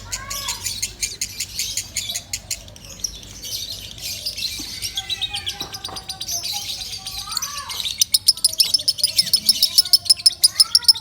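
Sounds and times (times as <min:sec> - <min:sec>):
bird chirping: 0:00.0 - 0:11.0.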